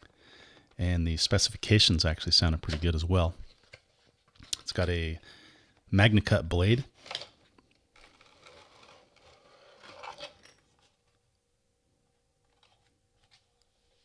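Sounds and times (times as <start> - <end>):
packaging scraping and rustling: 8.0 - 11.0.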